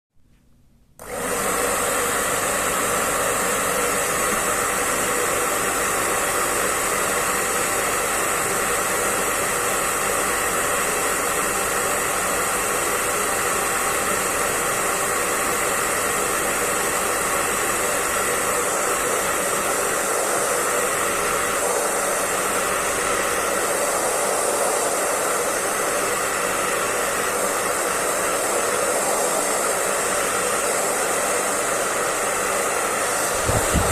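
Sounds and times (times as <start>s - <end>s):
hair dryer air rushing: 1.0s - 33.9s
fan motor whine: 33.1s - 33.9s.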